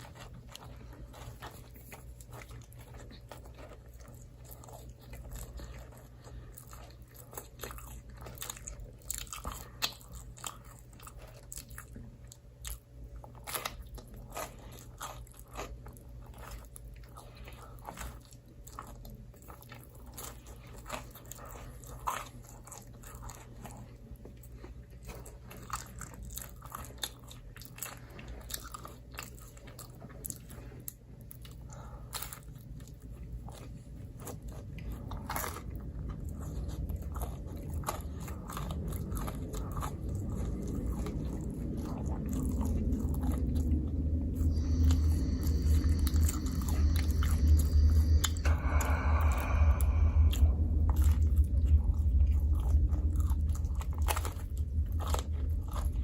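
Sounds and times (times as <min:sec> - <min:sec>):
crunchy bites and chewing: 0:00.0 - 0:56.0
low hum: 0:31.4 - 0:56.0.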